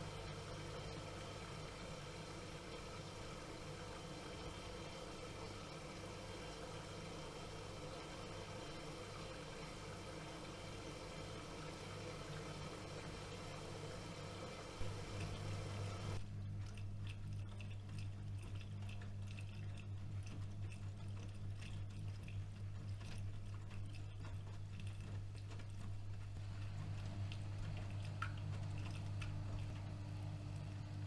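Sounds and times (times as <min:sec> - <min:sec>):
water sloshing in washing machine: 0:00.0 - 0:31.0
low motor hum: 0:11.8 - 0:31.0.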